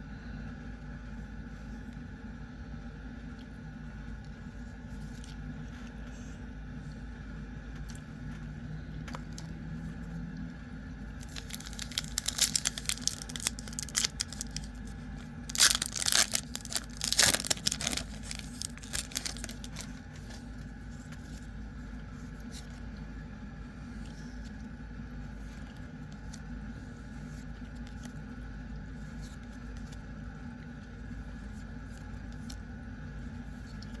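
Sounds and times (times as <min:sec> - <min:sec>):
steady low hum: 0:00.0 - 0:34.0
foil wrapper tearing and crinkling: 0:11.2 - 0:20.2.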